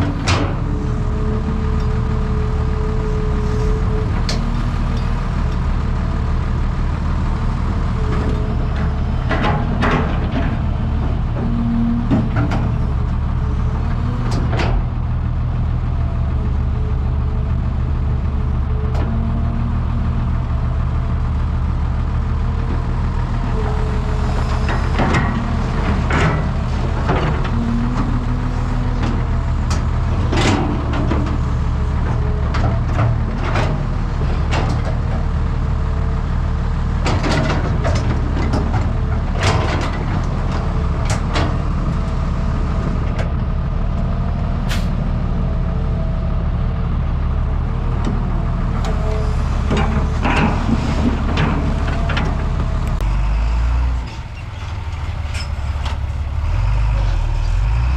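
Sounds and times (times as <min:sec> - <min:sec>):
excavator diesel engine running: 0:00.0 - 0:57.9.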